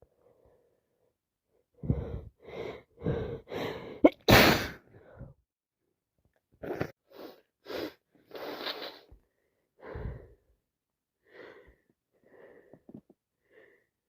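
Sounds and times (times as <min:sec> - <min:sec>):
person sniffing congested nose: 0:06.6 - 0:09.2.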